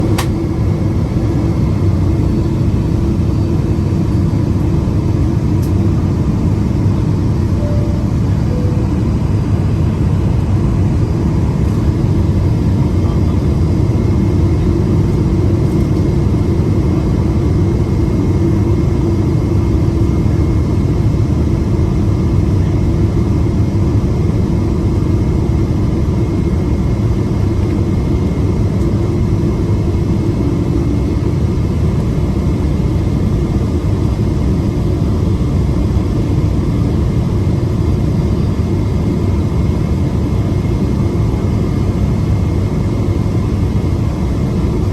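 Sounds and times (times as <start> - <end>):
jet engine rumble: 0.0 - 44.9
faint steady whine: 7.4 - 11.0.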